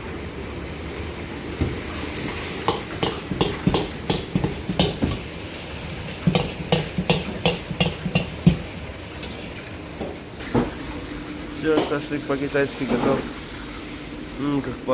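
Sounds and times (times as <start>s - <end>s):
meat sizzling: 1.5s - 9.1s.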